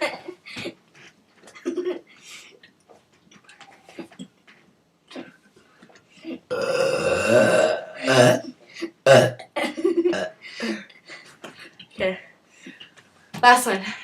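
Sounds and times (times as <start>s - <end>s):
person burping loudly: 6.5s - 10.4s.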